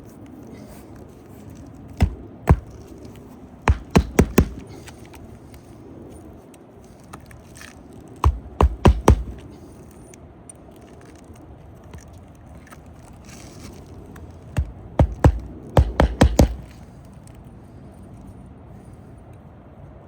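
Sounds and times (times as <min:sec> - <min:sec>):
hammer striking on roof: 0:02.0 - 0:02.9, 0:03.6 - 0:04.9, 0:08.2 - 0:09.5, 0:14.6 - 0:16.8.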